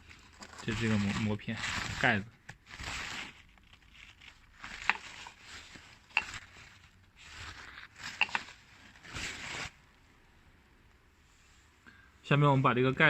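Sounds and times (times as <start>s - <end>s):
rustling scrapes: 0.0s - 9.8s.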